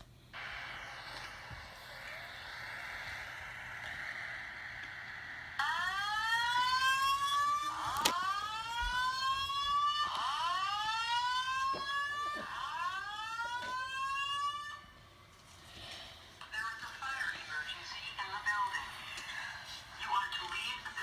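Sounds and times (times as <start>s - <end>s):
fire alarm whoop tone: 0.6s - 15.1s.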